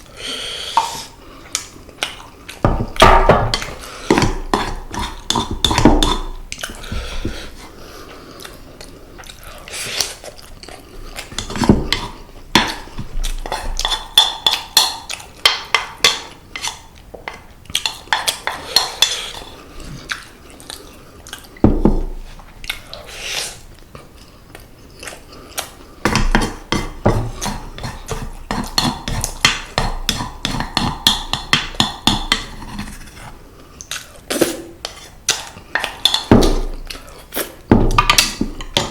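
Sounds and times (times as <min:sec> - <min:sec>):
chewing food: 0:07.8 - 0:21.6.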